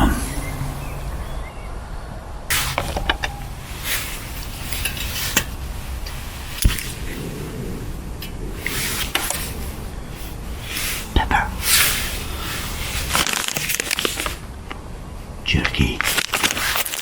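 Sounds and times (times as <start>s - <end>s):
metal pots and utensils clinking: 2.5s - 6.9s
rustling: 2.5s - 14.6s, 16.0s - 17.0s.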